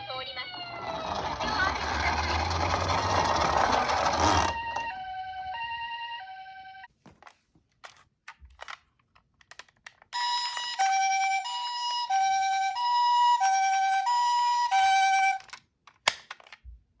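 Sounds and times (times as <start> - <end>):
two-tone ambulance siren: 0.0 - 6.9, 10.2 - 15.4.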